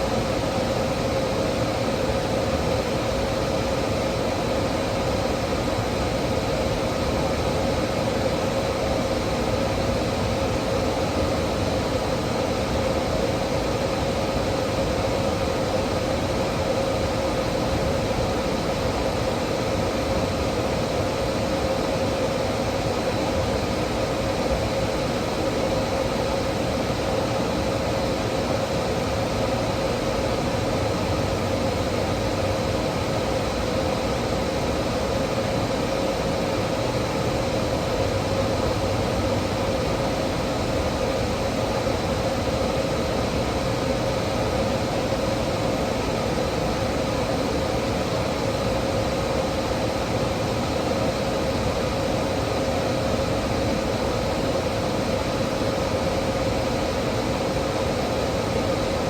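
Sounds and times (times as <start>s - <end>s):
steady mechanical drone: 28.4s - 42.6s.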